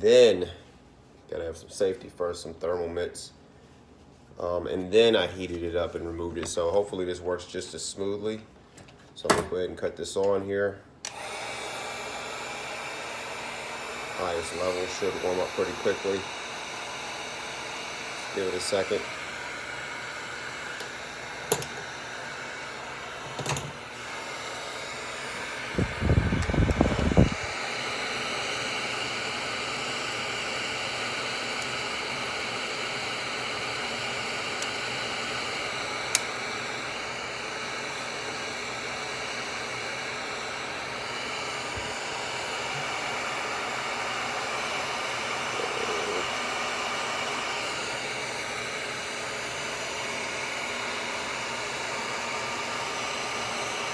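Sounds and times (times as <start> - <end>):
heat gun blowing air: 11.0 - 53.9.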